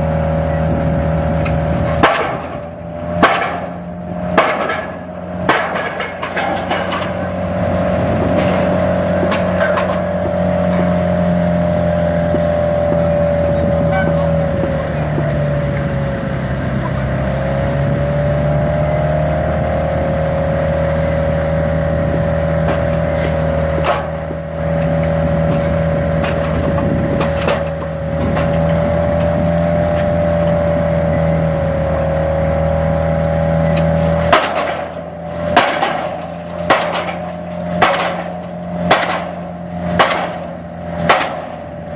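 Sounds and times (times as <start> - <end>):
pile driver engine running: 0.0 - 41.9
loud sharp impacts: 1.9 - 11.0, 34.2 - 41.7.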